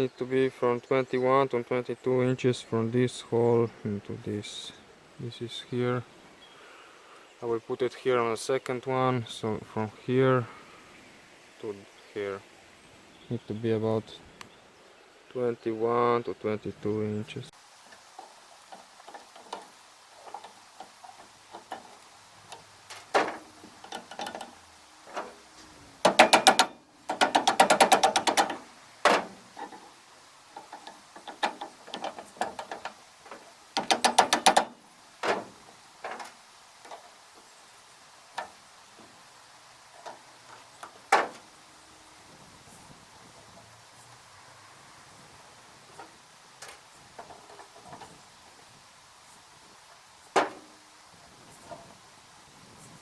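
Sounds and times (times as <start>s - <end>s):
metal clicks and knocks: 18.2s - 37.2s, 38.4s - 39.1s, 39.9s - 41.5s, 46.0s - 48.2s, 50.3s - 50.8s
fast ratchet-like clicking: 26.0s - 28.6s.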